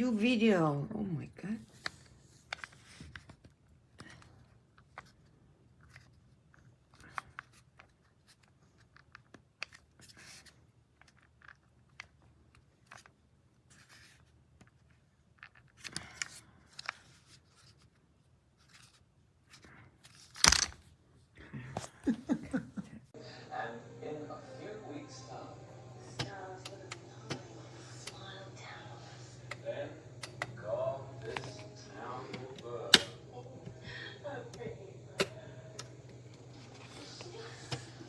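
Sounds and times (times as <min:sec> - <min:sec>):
soft handling clicks: 0:30.2 - 0:30.6.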